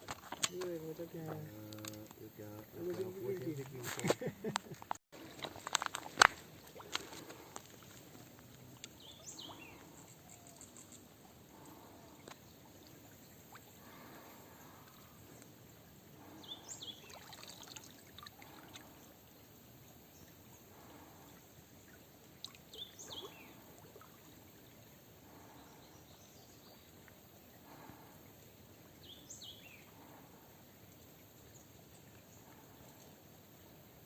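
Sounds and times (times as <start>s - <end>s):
water trickling: 4.7s - 25.8s.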